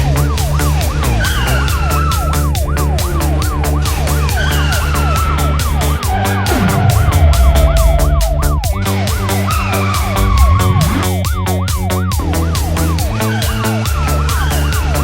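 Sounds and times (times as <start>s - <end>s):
long falling tones: 6.4s - 9.2s, 10.0s - 11.3s
electronic music with steady beat: 6.5s - 9.0s, 10.1s - 11.2s
yelping siren sound effect: 10.1s - 11.1s.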